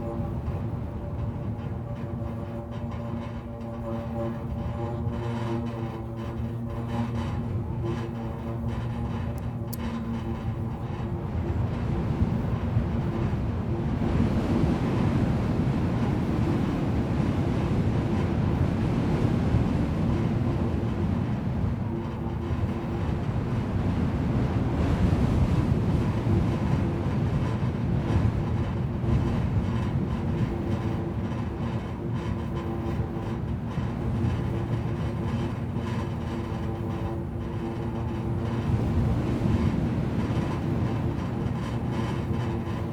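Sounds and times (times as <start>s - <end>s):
overhead wires humming: 3.6s - 42.9s
gusty wind rumble: 8.6s - 42.9s.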